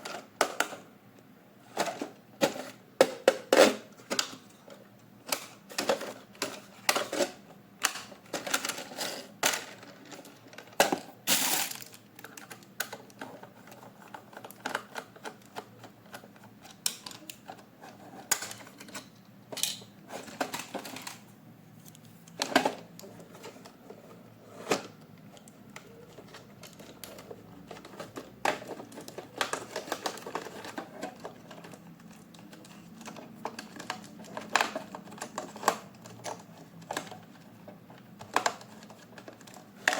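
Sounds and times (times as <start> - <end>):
packaging rustling: 11.3 - 15.5.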